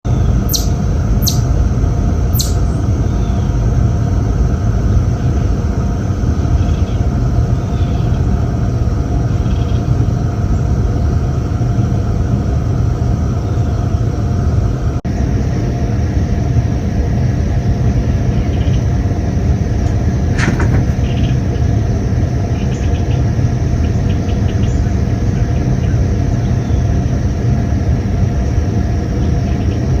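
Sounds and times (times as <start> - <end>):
chipmunk chirping: 0.3 - 1.6, 2.3 - 3.4
steady low rumble: 13.9 - 24.0.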